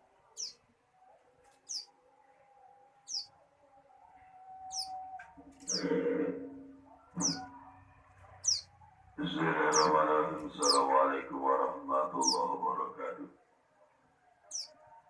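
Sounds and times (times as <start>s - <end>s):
bird giving high downward chirps: 0.4s - 0.6s, 1.7s - 1.9s, 3.0s - 3.3s, 4.6s - 6.0s, 7.1s - 7.6s, 8.4s - 8.7s, 9.6s - 10.9s, 14.4s - 14.8s.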